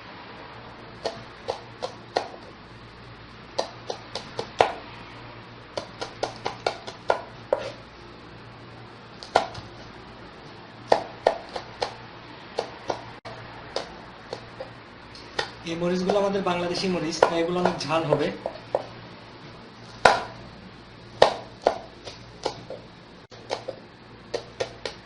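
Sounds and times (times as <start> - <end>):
knife chopping on cutting board: 1.0 - 2.5, 3.6 - 4.8, 5.8 - 7.8, 9.2 - 9.8, 10.9 - 12.0, 12.6 - 14.7, 15.3 - 16.3, 17.2 - 18.9, 19.9 - 20.4, 21.2 - 25.0.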